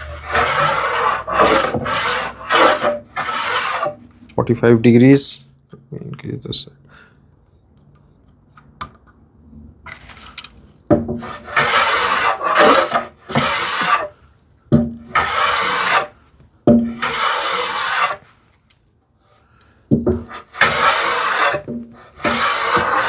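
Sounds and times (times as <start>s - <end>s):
hand plane rasping on wood: 0.0s - 4.0s, 11.2s - 14.2s, 15.0s - 16.2s, 16.8s - 18.3s, 20.2s - 23.0s.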